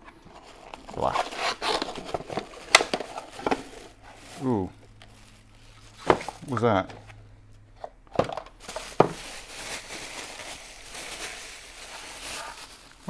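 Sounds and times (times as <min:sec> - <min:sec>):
packaging rustling and crinkling: 0:00.0 - 0:07.2, 0:08.1 - 0:13.0.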